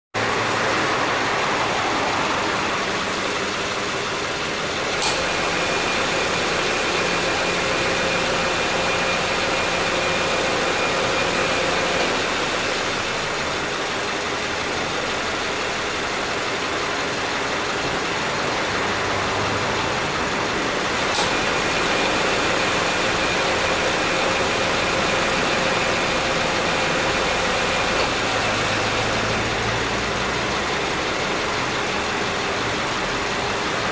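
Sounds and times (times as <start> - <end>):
car engine idling: 0.2 - 33.9
compressor whine: 0.2 - 33.9.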